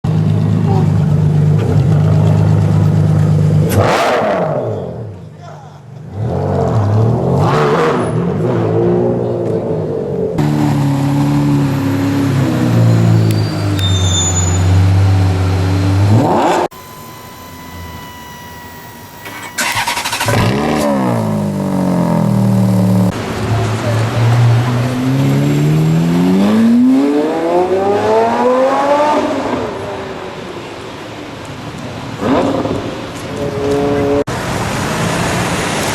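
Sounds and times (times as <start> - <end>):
supercar engine revving: 0.2 - 5.2, 6.0 - 14.0, 14.6 - 29.9.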